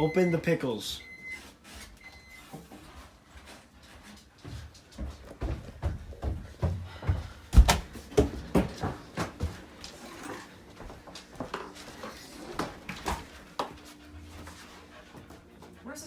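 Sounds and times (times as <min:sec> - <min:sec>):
irregular knocks and thumps: 0:05.1 - 0:09.6.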